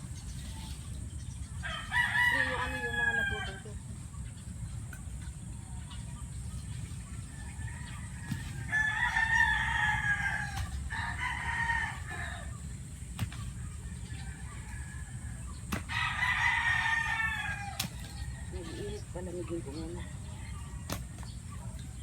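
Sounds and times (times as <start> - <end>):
rooster crowing: 1.6 - 3.8, 7.3 - 12.6, 13.8 - 18.9.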